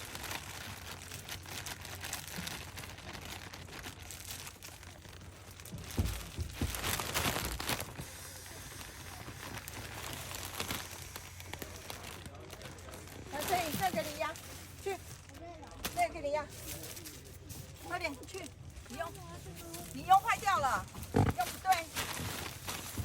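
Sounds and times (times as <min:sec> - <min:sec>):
bag crinkling and rustling: 0:00.0 - 0:23.0
bag thumps and scrunches: 0:05.6 - 0:07.9, 0:20.7 - 0:23.0.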